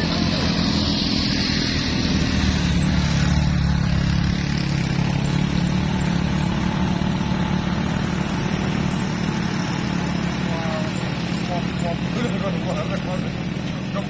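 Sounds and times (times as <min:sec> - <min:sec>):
vehicle engine droning: 0:00.0 - 0:14.0.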